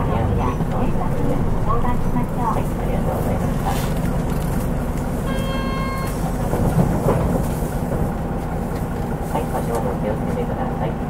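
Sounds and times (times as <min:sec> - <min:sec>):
bus diesel engine rumble: 0:00.0 - 0:11.0
electronic beep: 0:05.3 - 0:06.2.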